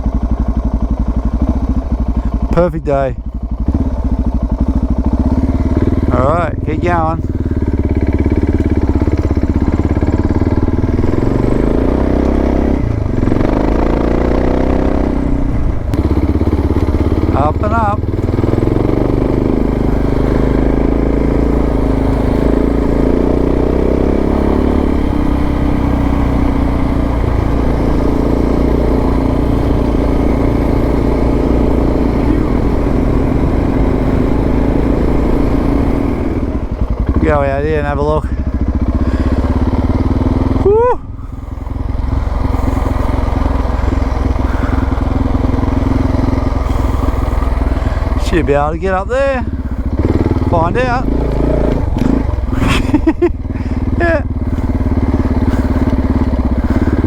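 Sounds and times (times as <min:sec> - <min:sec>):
motorcycle engine under load: 0:00.0 - 0:57.0.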